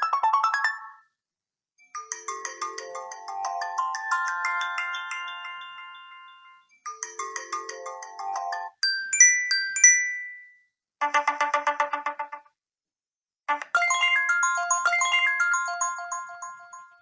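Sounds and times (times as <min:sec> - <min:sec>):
bell-like ringtone chimes: 0:01.8 - 0:10.7, 0:13.8 - 0:17.0
chiming electronic ringtone: 0:01.8 - 0:11.2, 0:13.8 - 0:17.0.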